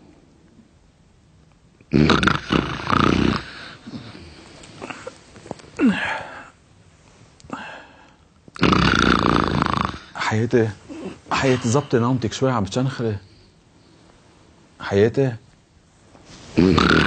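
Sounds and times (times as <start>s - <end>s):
person snoring: 1.9s - 5.1s, 8.6s - 10.2s, 16.5s - 17.0s.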